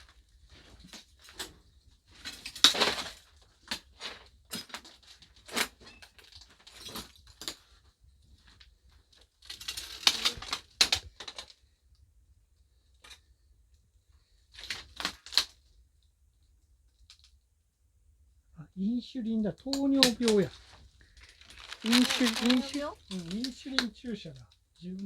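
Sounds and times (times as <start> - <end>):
small hard objects clattering: 20.0 - 24.4.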